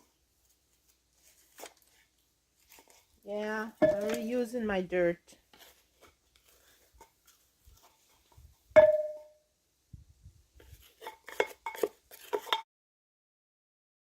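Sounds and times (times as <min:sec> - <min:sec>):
ceramic pot knocked and ringing: 0:03.8 - 0:04.2, 0:08.8 - 0:09.4.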